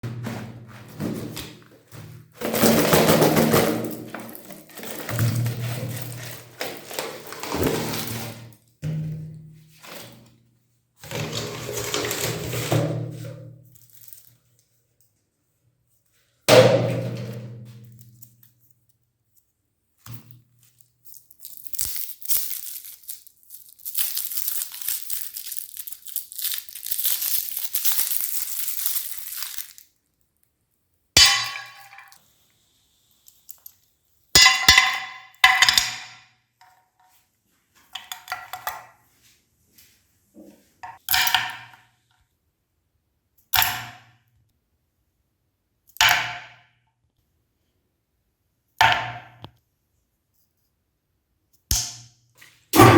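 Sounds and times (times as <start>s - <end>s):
crinkling and crunching: 0.0s - 8.7s, 13.6s - 14.7s, 20.6s - 30.4s.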